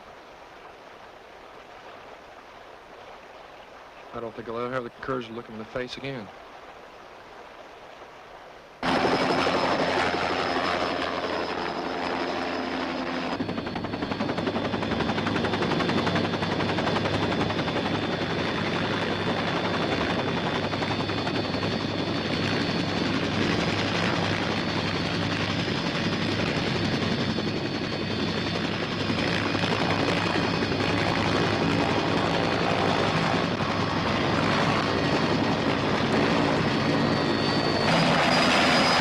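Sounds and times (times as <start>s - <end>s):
helicopter rotor chop: 8.8s - 39.0s.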